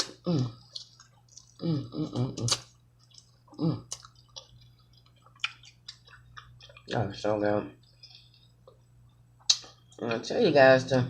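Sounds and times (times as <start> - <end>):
wet eating clicks and smacks: 0.0 - 7.0, 9.4 - 9.8.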